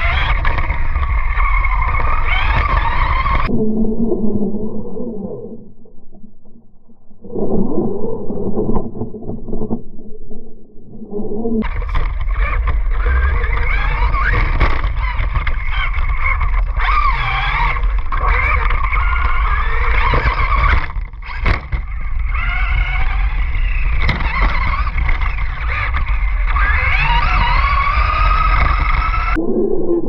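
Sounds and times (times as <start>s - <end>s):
rc car motor whining: 0.0s - 3.5s, 11.6s - 29.4s
wind rumble on microphone: 0.0s - 30.0s.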